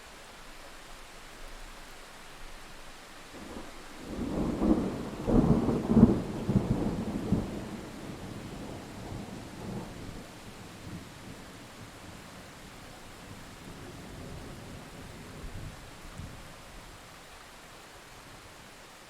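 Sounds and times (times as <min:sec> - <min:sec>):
steady rain hiss: 0:00.0 - 0:19.0
thunder rumbling and cracking: 0:03.4 - 0:11.0.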